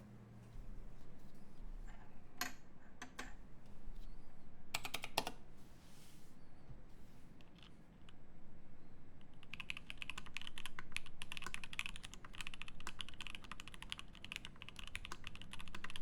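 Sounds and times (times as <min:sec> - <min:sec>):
typing on mechanical keyboard: 0:04.8 - 0:05.4, 0:09.4 - 0:16.0.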